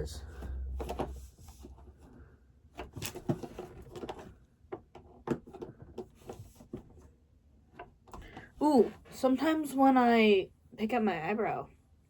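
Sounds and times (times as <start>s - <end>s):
rummaging through a drawer: 2.8s - 4.4s.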